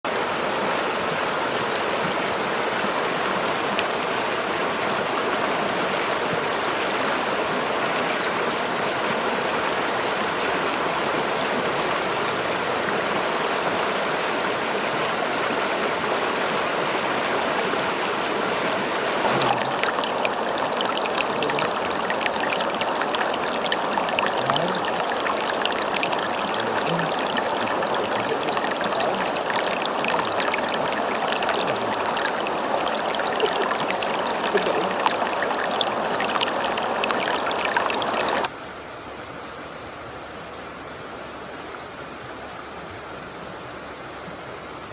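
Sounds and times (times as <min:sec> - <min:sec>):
running water: 0:01.0 - 0:38.5
water splashing and trickling: 0:19.0 - 0:38.5.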